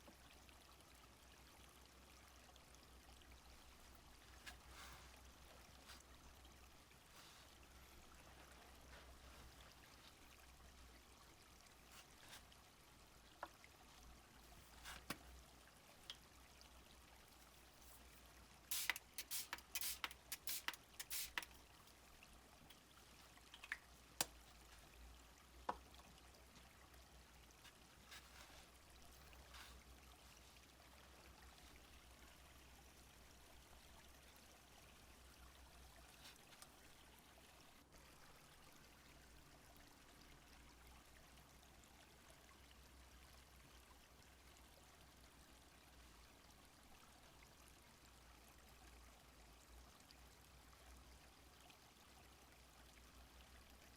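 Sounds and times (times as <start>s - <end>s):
stream trickling: 0.0s - 53.9s
small sharp clicks and taps: 18.7s - 21.6s, 23.5s - 24.4s.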